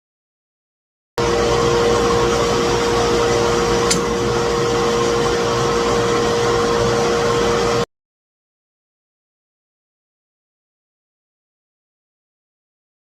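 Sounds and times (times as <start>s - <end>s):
workshop machine humming: 1.2s - 7.9s.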